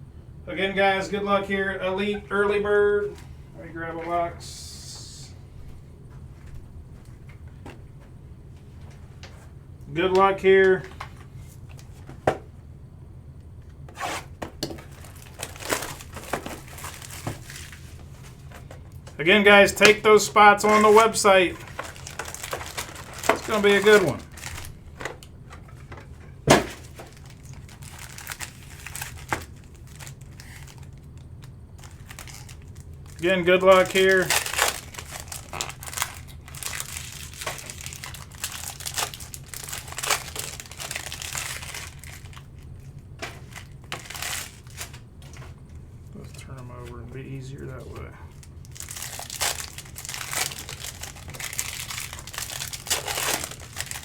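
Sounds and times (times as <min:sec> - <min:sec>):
card packaging rustling: 0:13.9 - 0:54.0.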